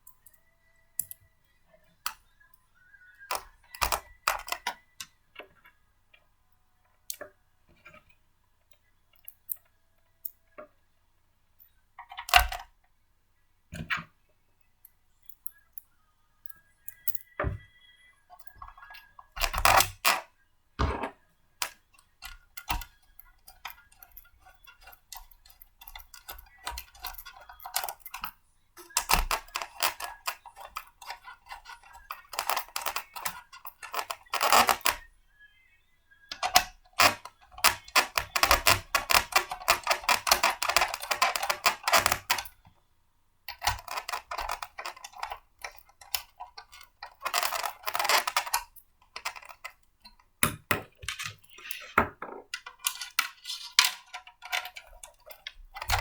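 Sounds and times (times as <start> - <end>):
blender parts clicking and rattling: 21.6 - 35.1, 36.3 - 42.6, 43.5 - 56.0.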